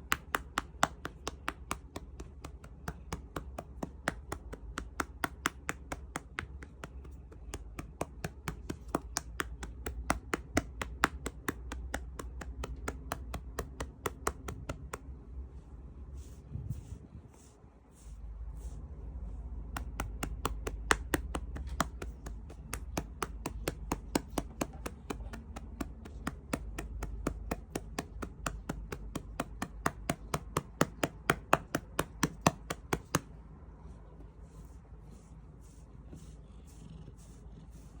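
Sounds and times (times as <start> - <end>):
rapid tapping by hand: 0.0 - 15.1, 19.7 - 33.4.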